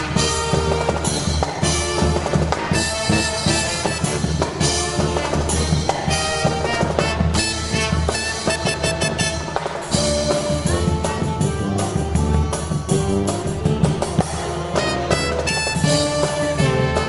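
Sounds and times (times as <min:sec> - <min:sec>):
brass band playing: 0:00.0 - 0:17.0
steady drum beat: 0:00.0 - 0:17.0.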